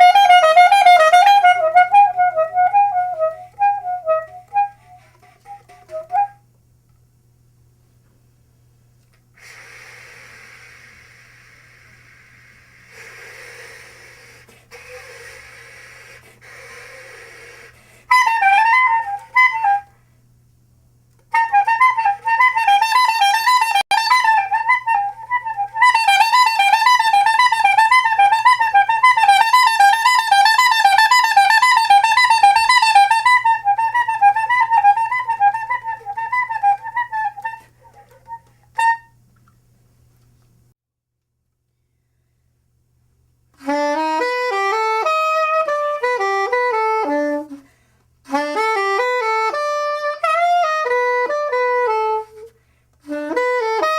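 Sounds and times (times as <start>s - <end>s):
woodwind warbling trill: 0.0s - 6.4s, 18.1s - 19.9s, 21.3s - 39.2s
breathy puffs of air: 9.4s - 18.1s.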